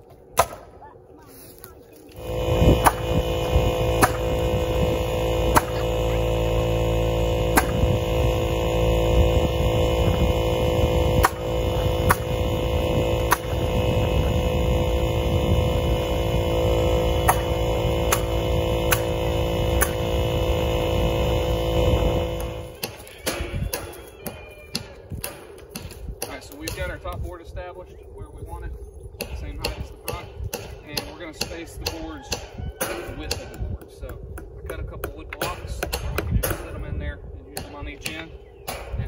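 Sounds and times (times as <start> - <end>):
machine hum with drone: 2.0 - 39.0.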